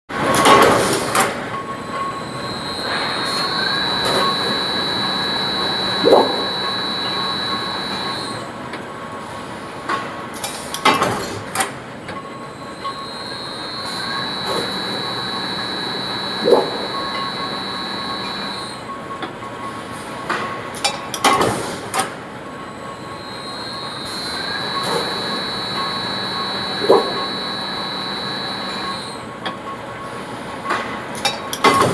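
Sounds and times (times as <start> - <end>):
machinery high-pitched whine: 1.1 - 9.8, 12.1 - 19.9, 22.4 - 30.4.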